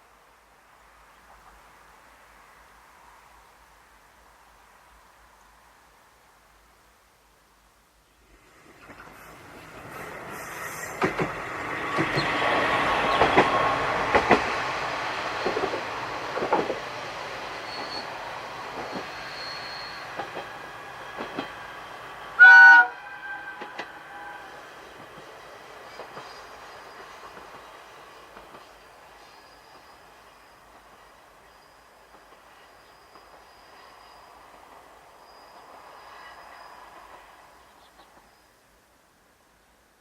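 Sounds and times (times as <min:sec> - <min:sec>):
wheels clacking over rail joints: 0:10.8 - 0:17.0, 0:18.7 - 0:21.7
train horn blast: 0:22.4 - 0:24.6.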